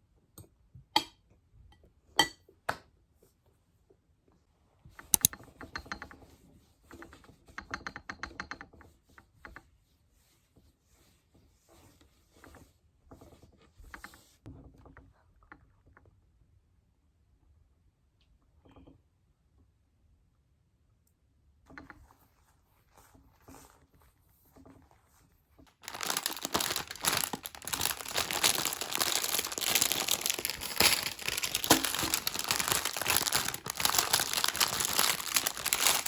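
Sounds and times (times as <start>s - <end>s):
small hard objects clicking and rattling: 25.8s - 36.0s.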